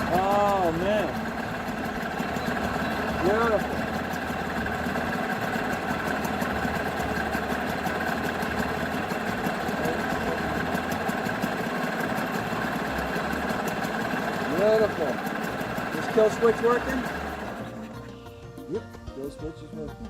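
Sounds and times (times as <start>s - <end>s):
cooling water circulating: 0.0s - 18.0s
outboard motor running: 0.0s - 20.0s.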